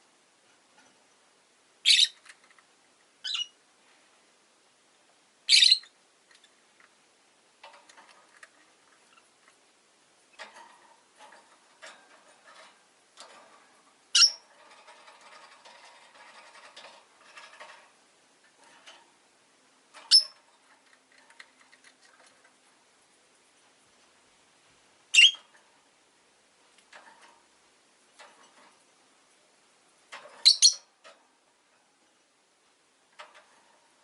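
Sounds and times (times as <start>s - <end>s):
shrill bird chirps: 1.8s - 2.2s, 3.2s - 3.6s, 5.5s - 5.9s, 14.2s - 14.4s, 25.1s - 25.5s, 30.4s - 30.9s
soft bird chatter: 1.8s - 2.6s, 3.2s - 3.6s, 5.5s - 6.9s, 25.1s - 25.6s, 30.1s - 30.9s.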